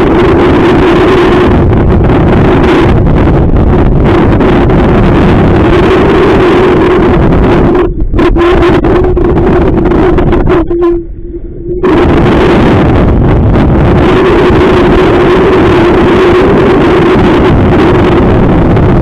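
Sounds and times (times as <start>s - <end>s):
boat motor hum: 0.0s - 19.0s
wind buffeting microphone: 0.0s - 19.0s.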